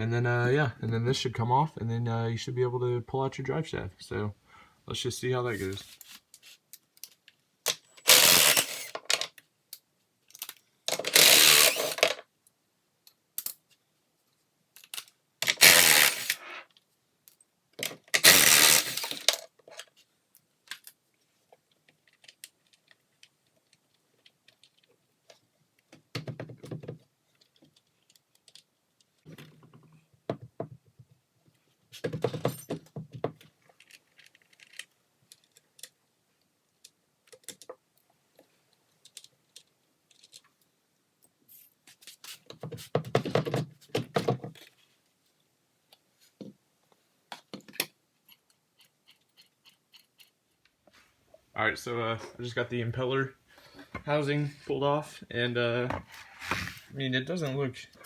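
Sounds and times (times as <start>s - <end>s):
hand ratchet clicking: 8.1s - 9.1s, 10.9s - 12.1s, 15.5s - 16.4s, 18.2s - 19.4s.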